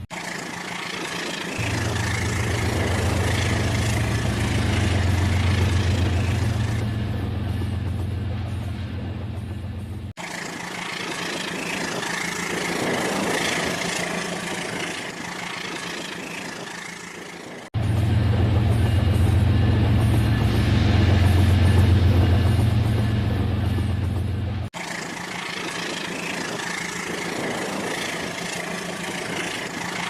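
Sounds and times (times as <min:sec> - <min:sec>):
toy train motor hum: 0:24.8 - 0:30.0.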